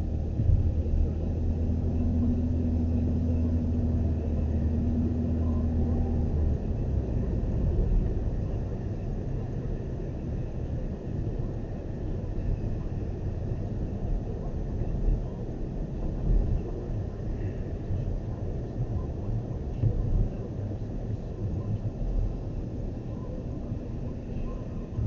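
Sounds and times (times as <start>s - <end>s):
car engine and road rumble: 0.0s - 25.0s
low hum: 0.0s - 25.0s.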